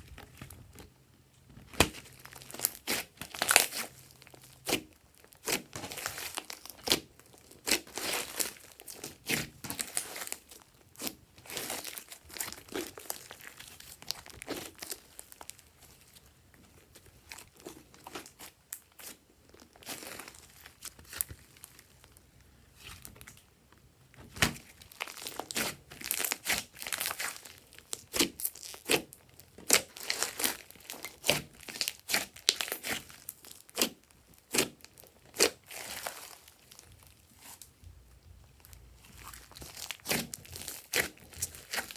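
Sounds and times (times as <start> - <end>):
slime crackling and popping: 1.6 - 15.6, 24.3 - 41.9.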